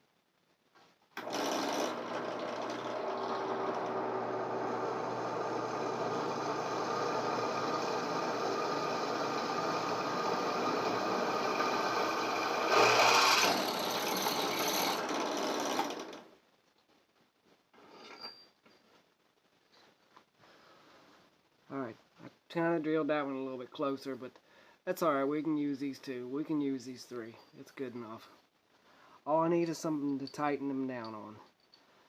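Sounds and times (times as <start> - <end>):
electric drill boring through metal: 1.2 - 16.3.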